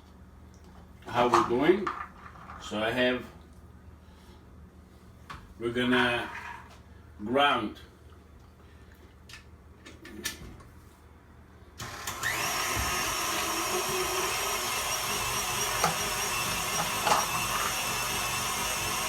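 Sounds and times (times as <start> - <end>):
electric meat grinder whirring: 11.8 - 19.0.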